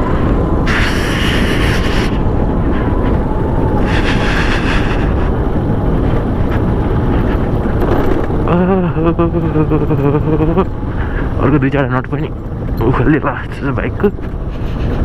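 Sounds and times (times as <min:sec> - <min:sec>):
motorcycle engine and road noise: 0:00.0 - 0:15.0
wind rushing over microphone: 0:00.0 - 0:15.0
brief hissing swells: 0:00.7 - 0:02.2.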